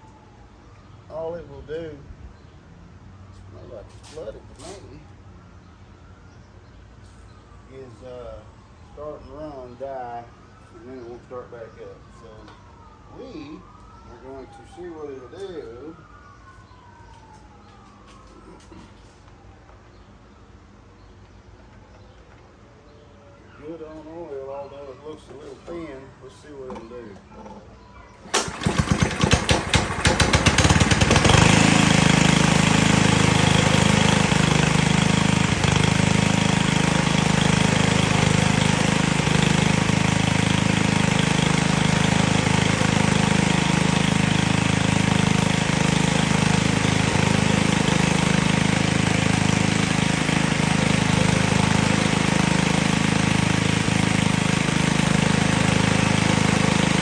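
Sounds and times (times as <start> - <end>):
engine pull-start cranking: 28.2 - 31.9
string trimmer engine running: 28.2 - 57.0.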